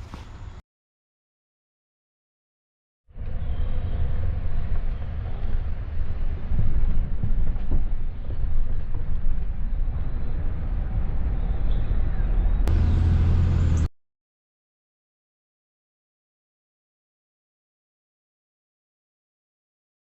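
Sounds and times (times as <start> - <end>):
road noise: 3.1 - 13.9
truck engine rumble: 3.2 - 13.9.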